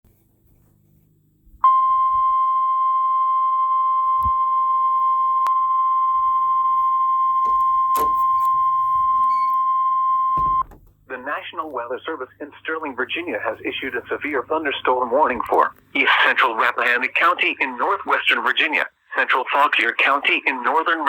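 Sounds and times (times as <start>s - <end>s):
steady high alarm beep: 1.6s - 10.7s.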